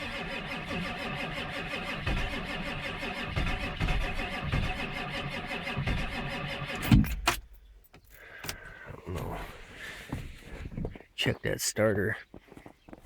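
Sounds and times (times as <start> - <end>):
starter motor cranking engine: 0.0 - 7.5.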